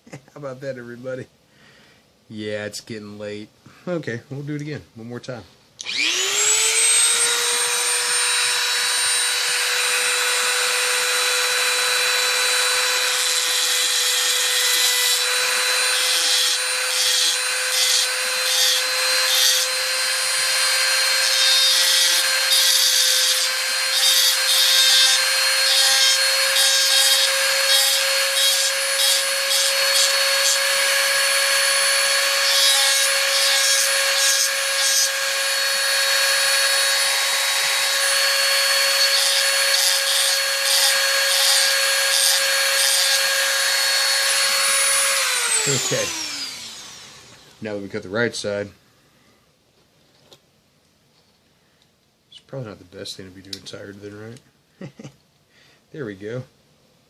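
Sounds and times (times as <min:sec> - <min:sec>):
rotary tool grinding metal: 0:05.8 - 0:47.6
rotary tool whining: 0:05.8 - 0:47.6.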